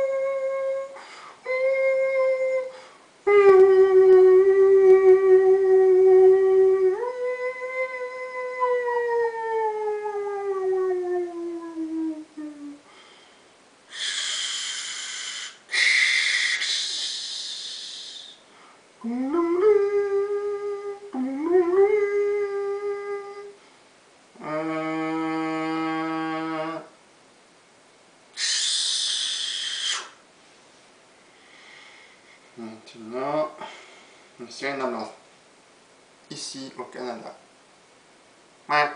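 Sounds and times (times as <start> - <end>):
man humming like a machine: 0.0 - 12.9, 13.9 - 18.4, 19.0 - 23.6, 24.4 - 27.0, 28.4 - 30.2
man hissing: 13.9 - 19.2, 28.4 - 30.2.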